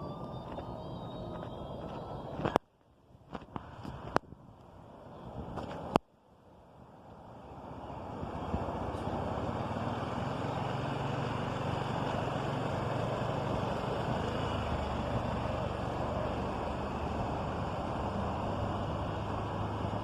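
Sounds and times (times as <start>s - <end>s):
vehicle engine running: 0.0s - 2.7s, 7.2s - 20.0s.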